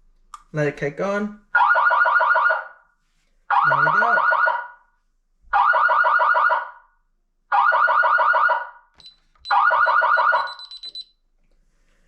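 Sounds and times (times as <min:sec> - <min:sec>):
fire alarm siren pulsing: 0:01.6 - 0:02.8, 0:03.5 - 0:04.9, 0:05.5 - 0:11.1.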